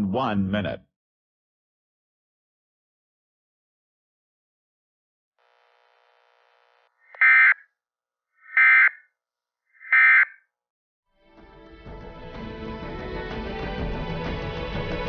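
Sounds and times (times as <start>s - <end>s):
digital data tone bursts: 7.2s - 7.6s
music: 11.1s - 15.0s.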